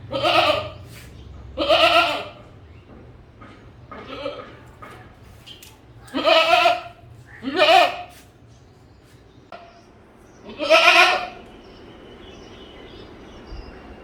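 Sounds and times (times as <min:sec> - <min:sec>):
goat bleating: 0:00.0 - 0:01.0, 0:01.6 - 0:02.5, 0:04.0 - 0:04.6, 0:06.0 - 0:08.2, 0:10.4 - 0:11.4.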